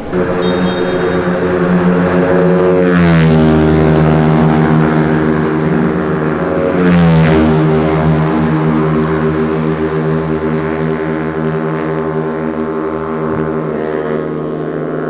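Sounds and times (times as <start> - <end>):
racing motorcycles passing: 0.0 - 15.0.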